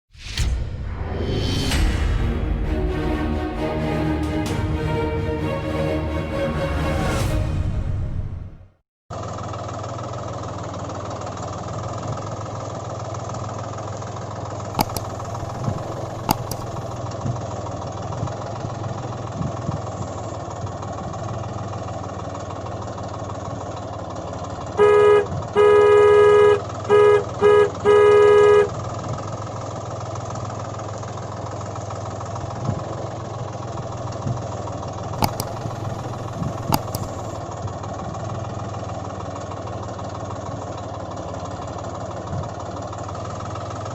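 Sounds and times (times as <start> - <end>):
tractor engine idling: 9.1 - 43.9
sharp clicks: 14.8 - 16.9, 35.2 - 37.3
vehicle horn honking: 24.8 - 28.8.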